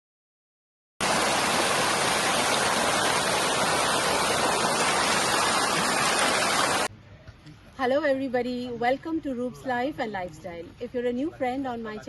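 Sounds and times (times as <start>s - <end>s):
waterfall rushing: 1.0s - 6.9s.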